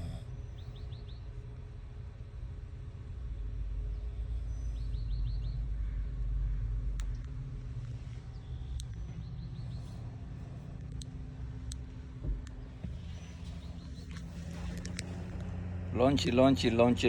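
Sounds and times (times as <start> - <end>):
man snoring: 0.0 - 0.3
small birds chirping: 0.0 - 2.4, 3.5 - 17.0.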